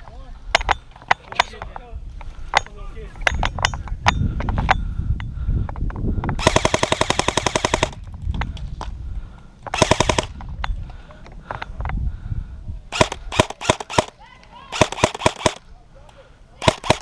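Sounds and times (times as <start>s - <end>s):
airsoft guns firing: 6.4s - 8.0s, 9.7s - 10.4s, 12.9s - 15.7s, 16.6s - 17.0s.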